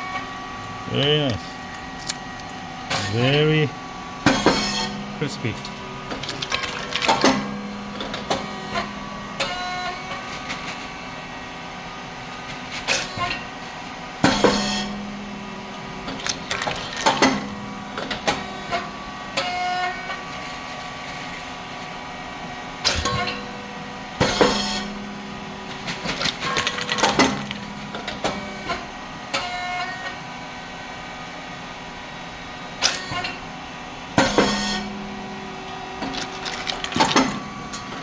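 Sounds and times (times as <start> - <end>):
rice cake machine pop: 25.9 - 28.4.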